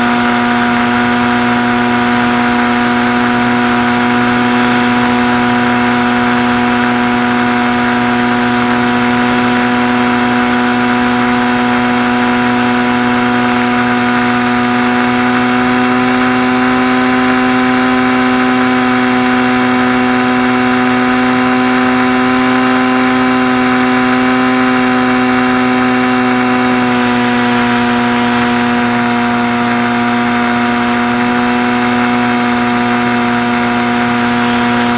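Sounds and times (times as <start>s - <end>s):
model plane motor droning: 0.0s - 34.9s.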